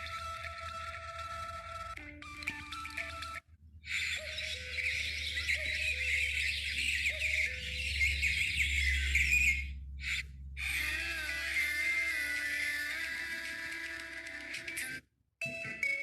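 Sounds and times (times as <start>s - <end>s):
melodic phone ringtone: 0.0s - 3.4s, 4.0s - 9.7s, 10.8s - 16.0s
high chirping ringtone: 1.9s - 10.0s.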